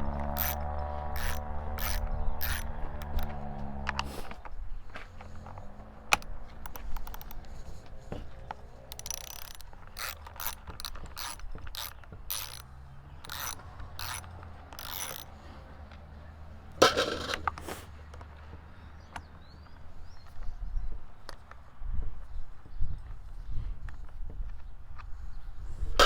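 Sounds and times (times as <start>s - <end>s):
socket ratchet clicking: 0.1s - 4.4s, 5.2s - 15.4s
loud clatter: 16.8s - 17.7s.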